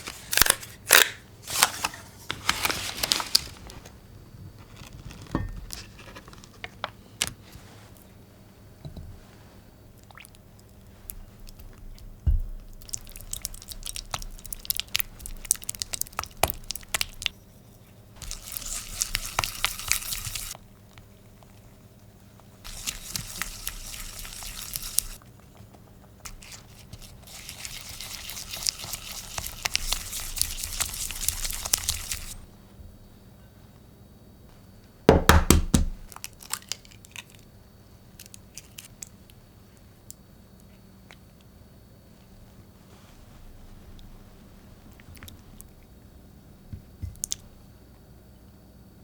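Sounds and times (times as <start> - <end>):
spatula scraping a bowl: 26.3 - 32.5.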